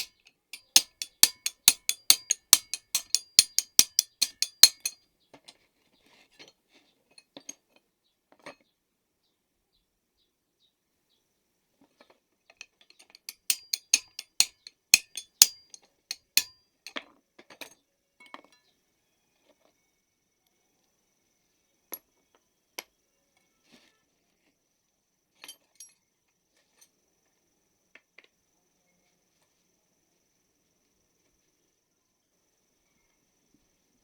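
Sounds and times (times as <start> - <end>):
tools clicking and tapping: 0.0 - 5.0, 13.2 - 16.5.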